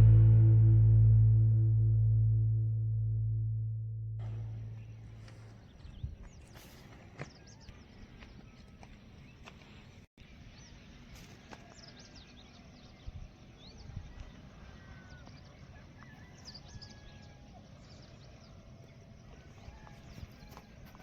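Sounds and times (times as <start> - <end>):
small birds chirping: 4.2 - 21.0.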